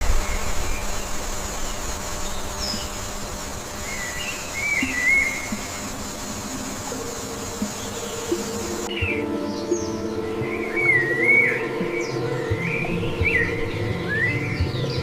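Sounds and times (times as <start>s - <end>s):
steady background hiss: 0.0s - 15.0s
bird warbling whistled call: 0.1s - 9.2s.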